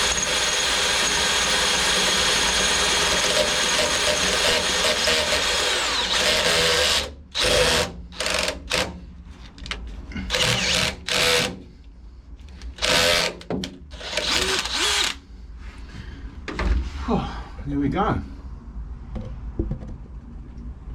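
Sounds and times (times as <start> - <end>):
electric drill boring: 0.0 - 8.8, 10.3 - 11.6, 12.8 - 13.4, 14.0 - 15.2.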